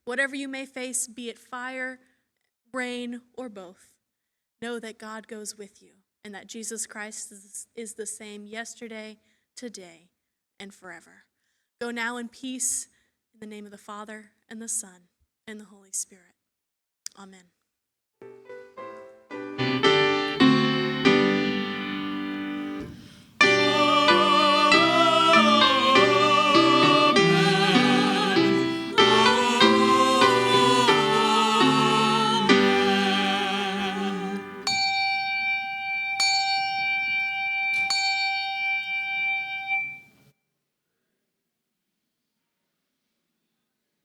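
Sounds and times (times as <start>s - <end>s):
piano chords and melody: 18.2s - 40.0s
bell chime ringing: 19.6s - 22.8s, 23.4s - 40.1s.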